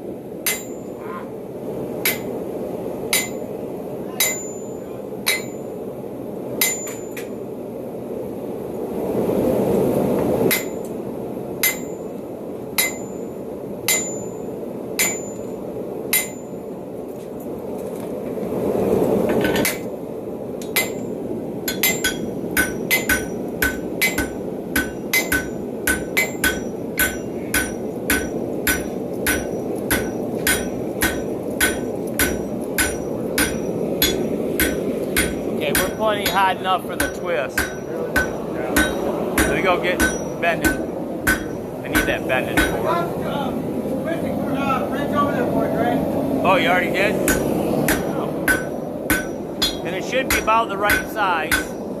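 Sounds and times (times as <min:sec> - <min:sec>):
hammer ringing on anvil: 0:00.4 - 0:01.0, 0:03.1 - 0:03.5, 0:04.2 - 0:05.7, 0:06.6 - 0:07.2, 0:11.6 - 0:12.1, 0:12.8 - 0:13.3, 0:13.9 - 0:15.5, 0:16.1 - 0:16.6, 0:21.7 - 0:42.8, 0:47.2 - 0:51.8.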